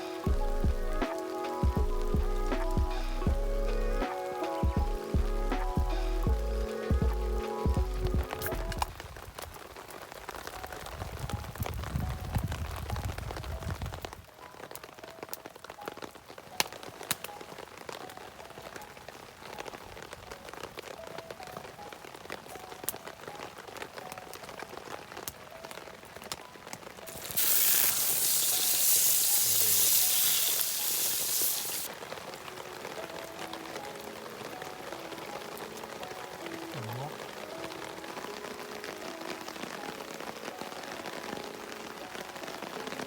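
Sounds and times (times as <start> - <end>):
campfire crackling and popping: 0.0 - 43.0
rain falling: 0.0 - 43.0
loud hiss: 27.1 - 31.9.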